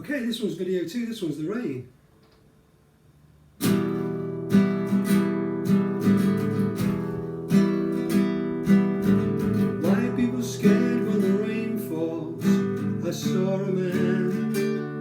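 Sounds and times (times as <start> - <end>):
acoustic guitar strumming chords: 3.6 - 15.0.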